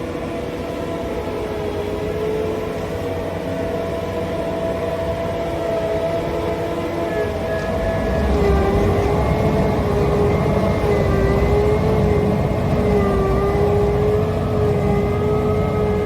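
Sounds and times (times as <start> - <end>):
machine running with low rumble: 2.1 - 16.0.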